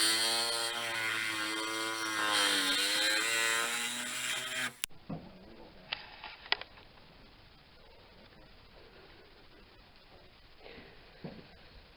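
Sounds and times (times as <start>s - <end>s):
angle grinder cutting metal: 0.0s - 4.9s.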